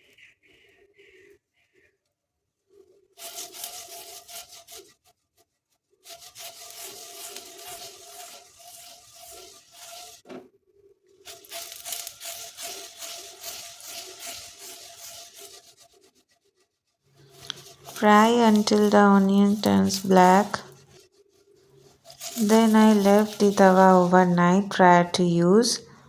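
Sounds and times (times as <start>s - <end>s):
onion sizzling on hot pan: 3.2s - 5.0s, 6.0s - 10.3s, 11.2s - 16.0s, 17.2s - 21.1s, 21.8s - 25.8s.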